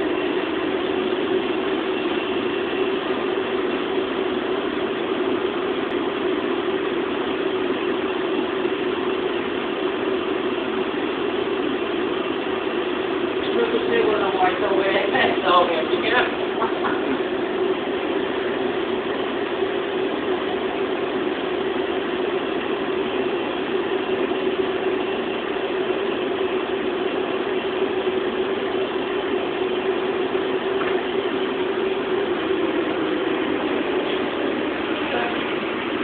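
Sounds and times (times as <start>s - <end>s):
steady machine drone: 0.0s - 36.0s.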